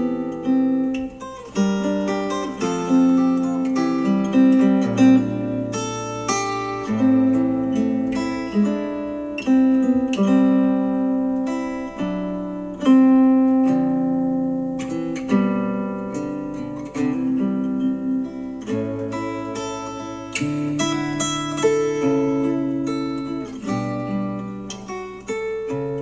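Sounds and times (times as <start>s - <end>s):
acoustic guitar chords: 0.0s - 26.0s.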